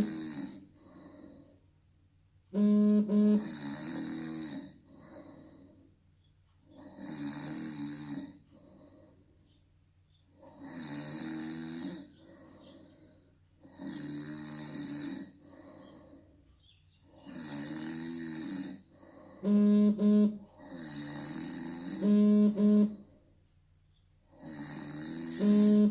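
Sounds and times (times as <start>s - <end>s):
person snoring: 0.0s - 1.3s, 3.2s - 5.4s, 6.8s - 8.4s, 10.4s - 12.2s, 13.6s - 15.4s, 17.2s - 22.9s, 24.3s - 25.9s
vibration alert buzzing: 2.6s - 3.8s, 19.5s - 20.4s, 21.9s - 23.0s, 25.3s - 25.9s.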